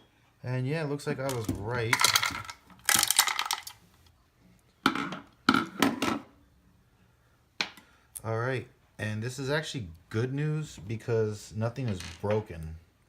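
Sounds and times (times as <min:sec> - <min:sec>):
metal parts clinking and rattling: 0:01.3 - 0:03.8.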